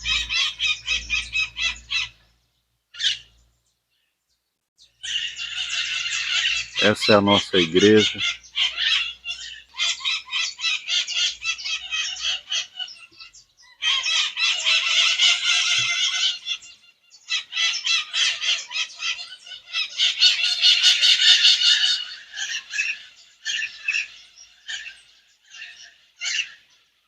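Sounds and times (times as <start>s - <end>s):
small birds chirping: 0.0s - 27.0s.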